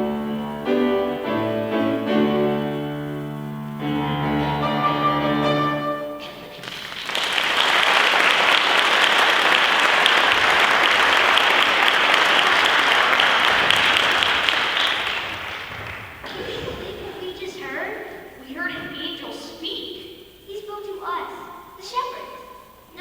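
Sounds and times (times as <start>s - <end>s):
music chord held: 0.0s - 6.6s
audience applauding: 4.3s - 16.8s.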